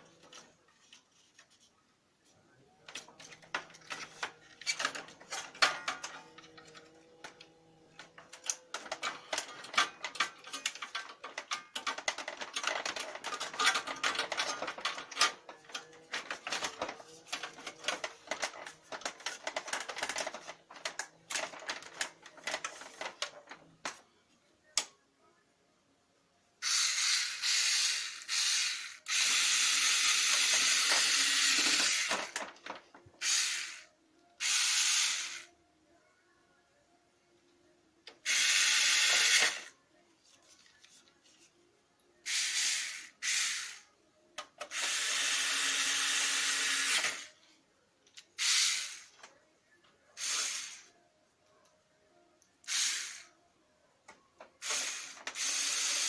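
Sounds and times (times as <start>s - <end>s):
printer clicking and rattling: 2.9s - 24.0s, 30.3s - 33.0s.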